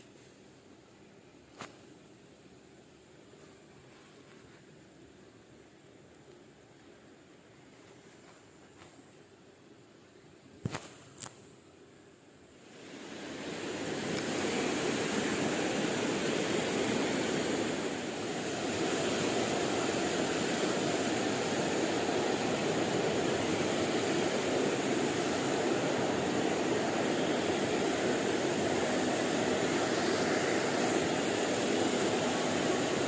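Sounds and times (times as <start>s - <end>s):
flowing river water: 12.6s - 33.0s.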